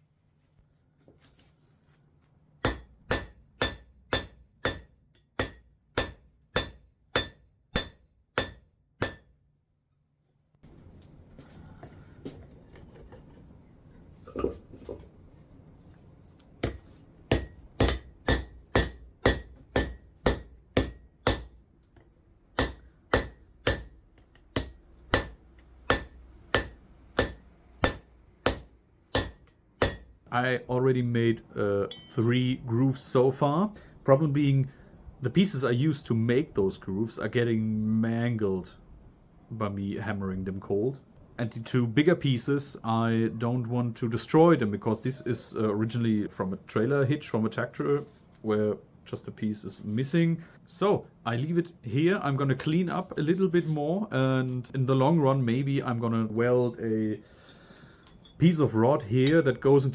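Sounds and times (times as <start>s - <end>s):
hammer striking steel: 2.6s - 9.4s, 16.6s - 21.6s, 22.6s - 30.2s.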